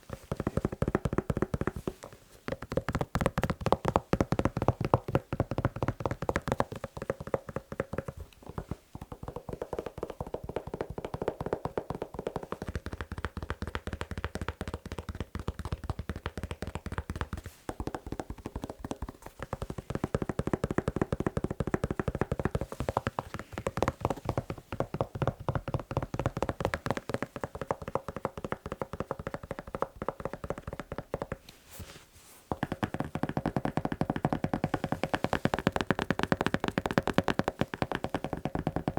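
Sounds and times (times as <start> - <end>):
fast tapping on a shoe: 0.0 - 31.5, 32.5 - 38.9.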